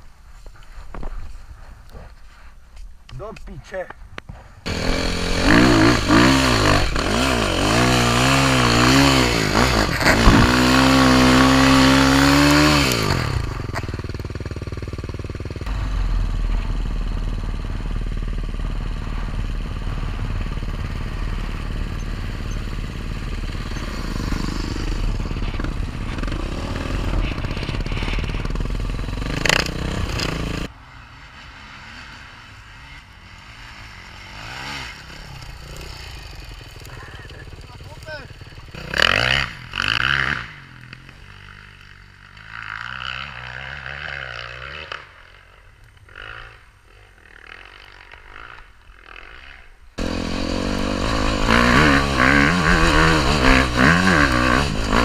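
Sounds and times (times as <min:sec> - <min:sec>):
motorcycle engine revving: 0:04.7 - 0:55.0.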